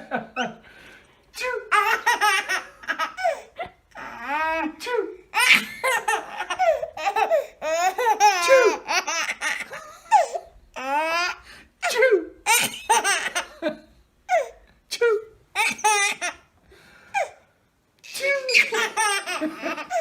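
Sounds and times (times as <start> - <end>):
baby laughing: 1.7 - 4.7, 5.3 - 11.4, 12.4 - 13.7, 15.6 - 16.5, 18.2 - 20.0.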